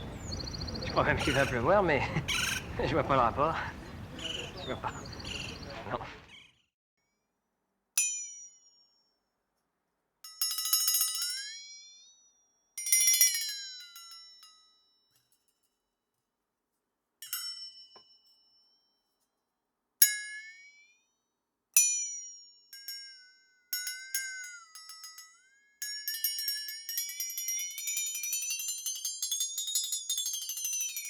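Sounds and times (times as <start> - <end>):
flexatone rattling tremolo: 10.3 - 12.1, 12.8 - 15.4, 17.2 - 18.8, 21.8 - 31.0
flexatone strikes: 21.8 - 31.0.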